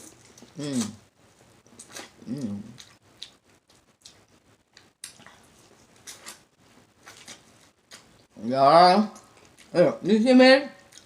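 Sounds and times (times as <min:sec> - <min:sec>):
wet eating sounds: 0:01.6 - 0:06.4.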